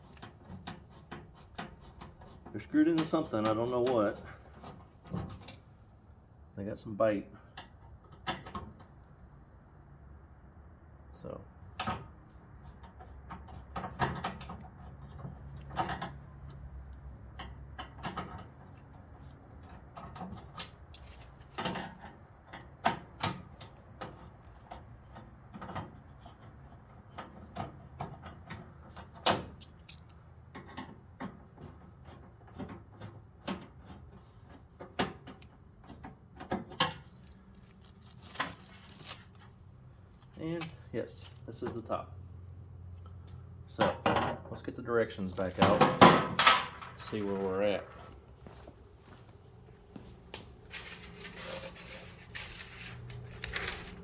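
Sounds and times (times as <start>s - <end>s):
hands working on metal cabinet: 0.0s - 5.6s, 11.8s - 16.2s, 17.3s - 29.8s, 30.4s - 37.2s, 45.4s - 48.4s.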